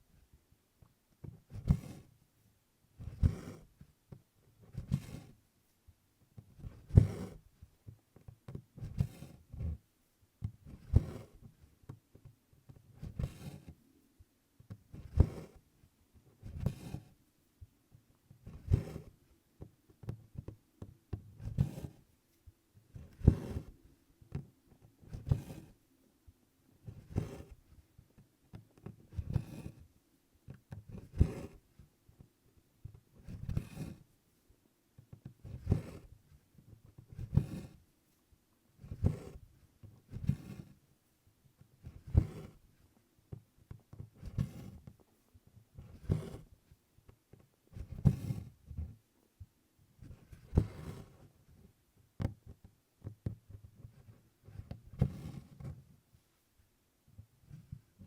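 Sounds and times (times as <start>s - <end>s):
needle thread pulled through cloth: 16.4s - 17.2s, 20.0s - 25.8s, 26.8s - 27.8s.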